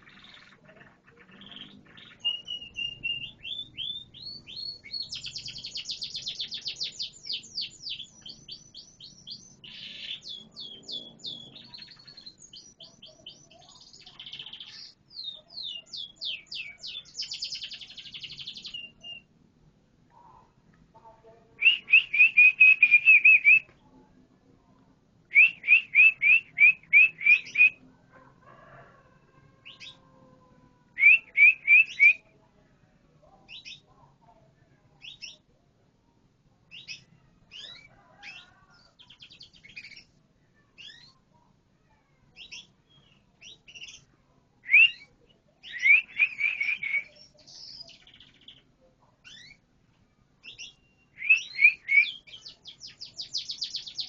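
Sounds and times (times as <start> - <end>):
canary trilling: 0.0 - 19.3, 29.6 - 30.3, 36.7 - 41.2.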